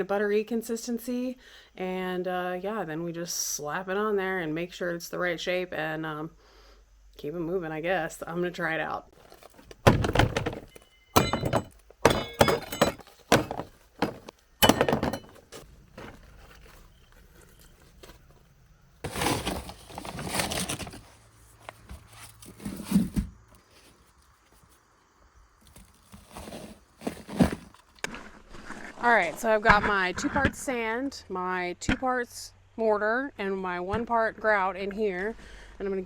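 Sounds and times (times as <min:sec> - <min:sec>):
sharp knocks and clatters: 0:09.6 - 0:16.1
dull thud: 0:09.7 - 0:16.1.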